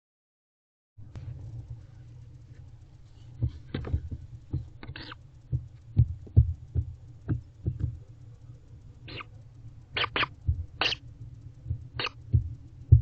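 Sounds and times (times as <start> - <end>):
steady low hum: 1.0 - 13.0
brief raspy owlet call: 9.1 - 9.3, 10.0 - 11.0.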